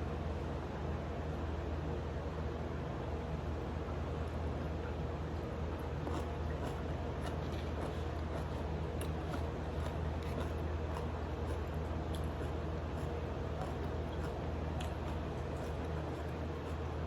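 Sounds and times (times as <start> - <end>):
steady low hum: 0.0 - 17.0
chewing and sucking: 5.8 - 17.0.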